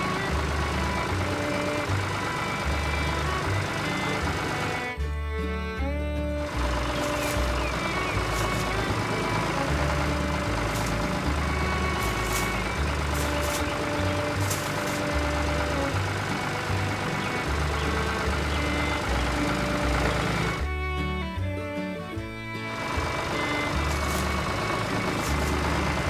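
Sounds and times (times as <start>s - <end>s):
background music: 0.0s - 26.0s
combine harvester engine running: 0.0s - 26.0s.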